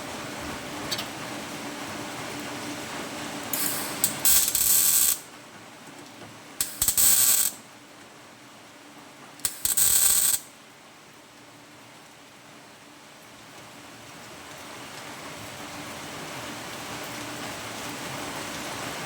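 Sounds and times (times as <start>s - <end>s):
welder arc strikes: 3.5s - 5.2s, 6.6s - 7.6s, 9.4s - 10.4s
welding crackling sizzle: 3.5s - 5.3s, 6.6s - 7.6s, 9.4s - 10.5s.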